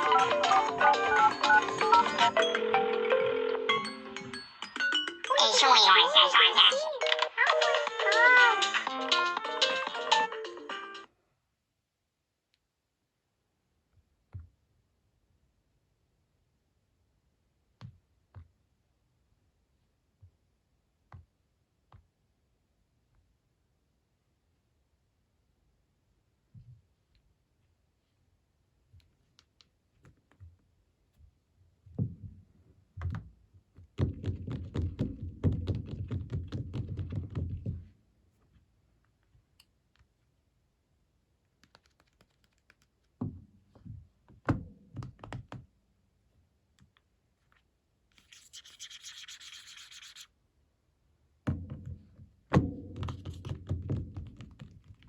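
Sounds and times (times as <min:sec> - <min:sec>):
rapid taps and scraping: 0:33.8 - 0:37.9, 0:41.6 - 0:44.0, 0:53.0 - 0:55.0.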